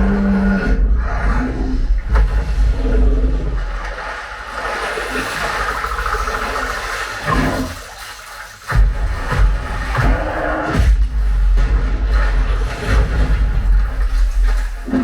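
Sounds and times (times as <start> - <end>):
film soundtrack with deep bass: 0.0 - 4.4, 8.7 - 15.0.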